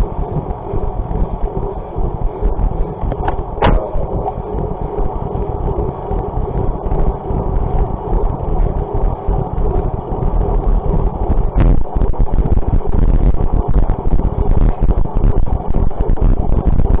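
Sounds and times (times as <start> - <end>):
rumbling travel noise: 0.0 - 17.0
wind buffeting microphone: 0.0 - 17.0
sharp click: 3.0 - 4.4.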